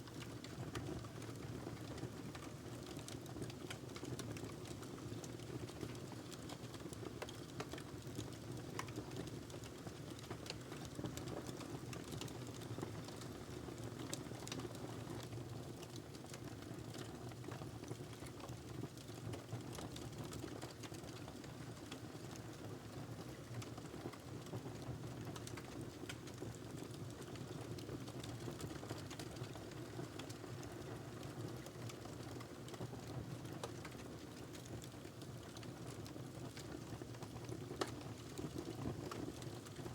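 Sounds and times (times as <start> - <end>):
logs crackling and popping: 25.2 - 27.4, 28.1 - 35.6, 36.5 - 39.5.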